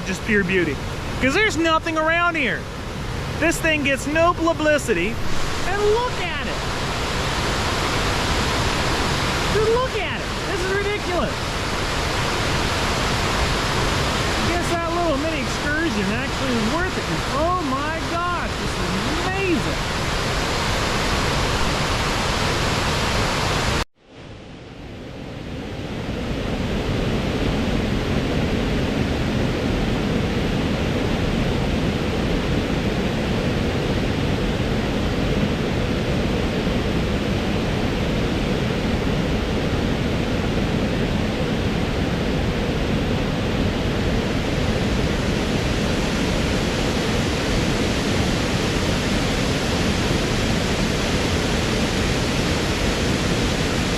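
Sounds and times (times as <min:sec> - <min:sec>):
waterfall rushing: 0:00.0 - 0:23.8.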